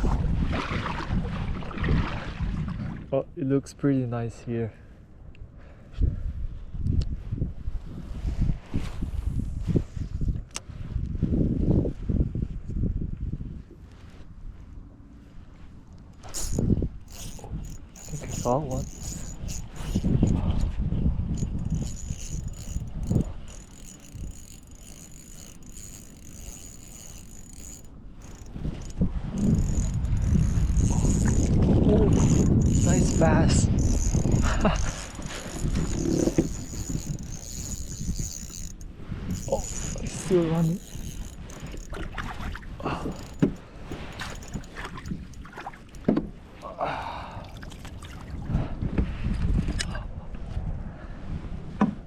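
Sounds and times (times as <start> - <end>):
low wind rumble: 0.0 - 3.4, 4.3 - 52.0
fishing reel whirring: 16.0 - 46.0.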